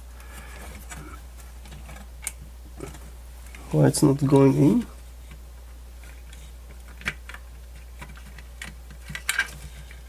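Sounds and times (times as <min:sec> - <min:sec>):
plastic parts clicking and tapping: 0:06.0 - 0:10.0.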